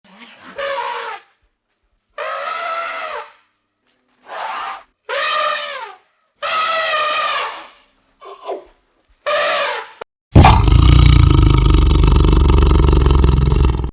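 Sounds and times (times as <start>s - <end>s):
trumpet-like animal calls: 0.1s - 1.2s, 2.2s - 3.4s, 4.2s - 8.6s, 9.3s - 10.6s.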